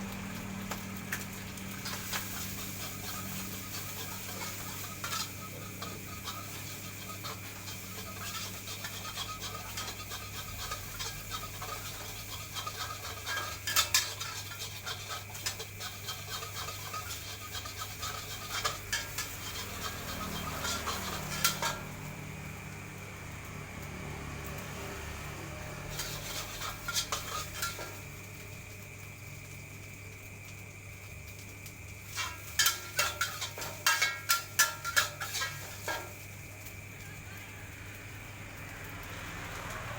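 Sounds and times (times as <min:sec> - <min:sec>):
metal spatula scraping a wok: 0:01.3 - 0:22.4, 0:25.7 - 0:28.5, 0:32.0 - 0:36.3.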